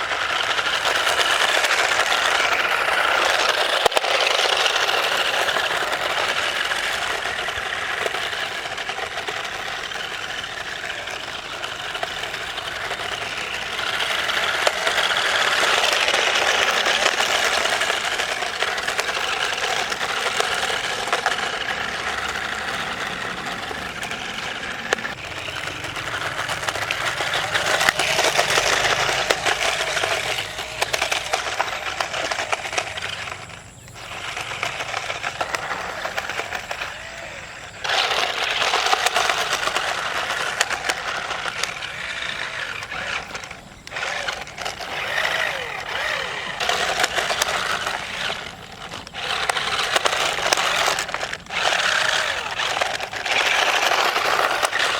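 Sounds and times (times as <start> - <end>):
electric motors whirring: 0.0 - 54.9
plastic toy car clattering: 0.0 - 54.9.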